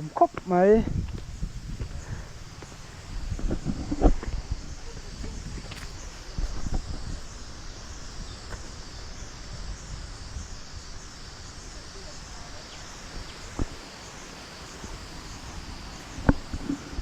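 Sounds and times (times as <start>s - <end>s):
high-pitched insect chorus: 0.0s - 17.0s.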